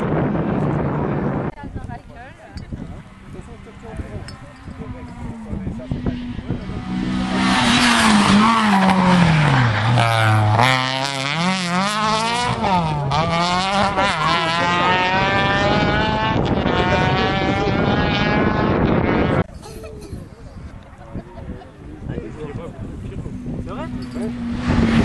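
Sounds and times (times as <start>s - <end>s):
rally car engine revving: 2.7s - 19.5s, 22.3s - 25.0s.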